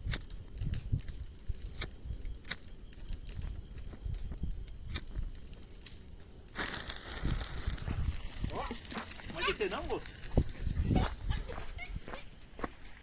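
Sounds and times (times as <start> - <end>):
wood bonfire crackling: 0.0 - 13.0
sharp pops: 4.8 - 10.6
loud steady hiss: 6.4 - 10.8.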